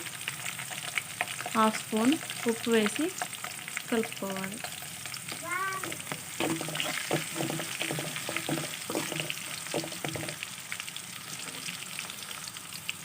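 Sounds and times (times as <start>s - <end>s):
food sizzling in hot oil: 0.0s - 13.0s
spoon scraping a pan: 5.8s - 10.4s.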